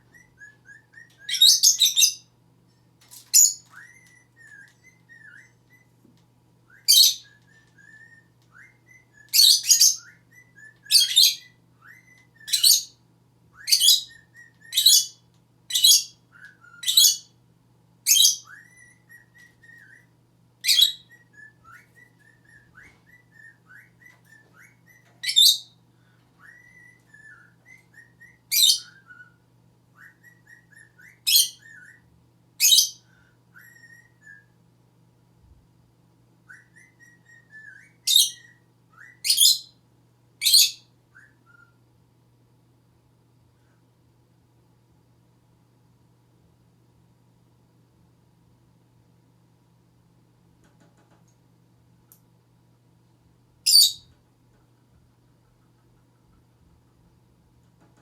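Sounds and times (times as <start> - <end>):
lovebird shrill chirps: 1.0 - 2.2, 3.3 - 5.5, 6.9 - 7.3, 9.3 - 10.2, 10.9 - 12.9, 13.7 - 16.2, 16.8 - 17.3, 18.1 - 19.0, 20.6 - 21.2, 25.2 - 25.7, 31.2 - 31.9, 53.7 - 54.1.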